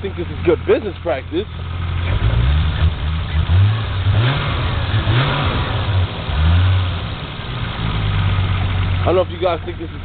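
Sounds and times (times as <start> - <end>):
car engine running: 0.0 - 10.0
engine throttle blips: 0.0 - 10.0.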